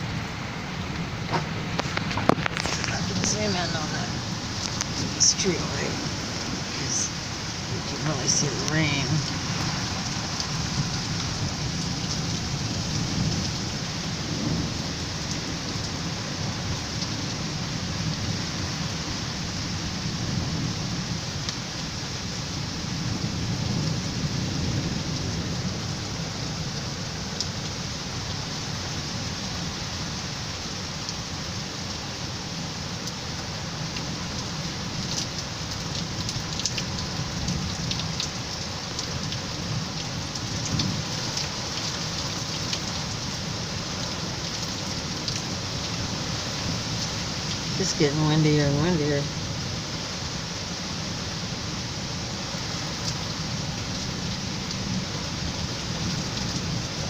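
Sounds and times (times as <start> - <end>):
heavy rain pouring: 0.0 - 57.0
low rumble of gusting wind: 0.0 - 57.0.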